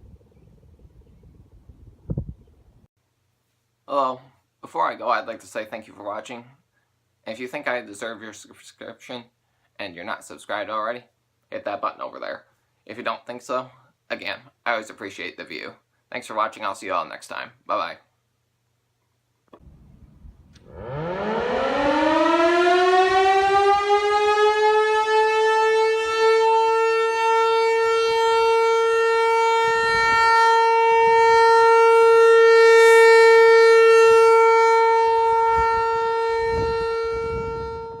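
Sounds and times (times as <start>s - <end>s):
warning siren: 20.6s - 38.0s.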